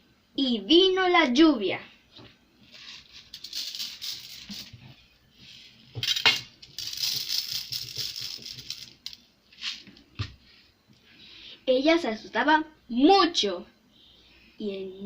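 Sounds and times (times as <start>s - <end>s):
rattle of shaken small pieces: 2.8s - 4.8s, 6.0s - 9.8s.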